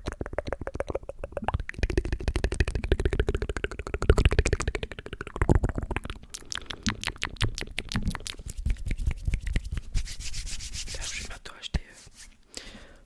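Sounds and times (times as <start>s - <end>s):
wet mouth clicks and smacks: 0.0s - 9.9s.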